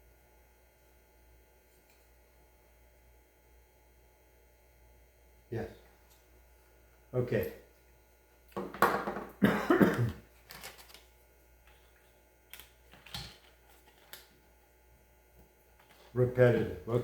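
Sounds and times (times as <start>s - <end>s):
man coughing: 9.4s - 10.2s.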